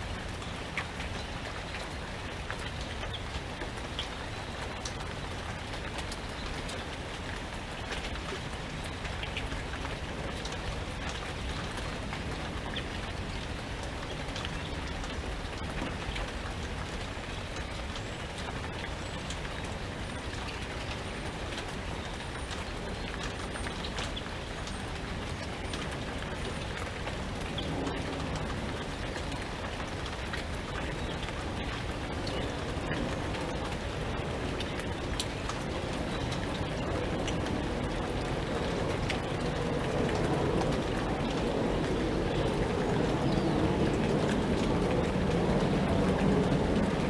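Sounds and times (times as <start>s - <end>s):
low wind rumble: 0.0s - 47.0s
rain falling: 0.0s - 47.0s.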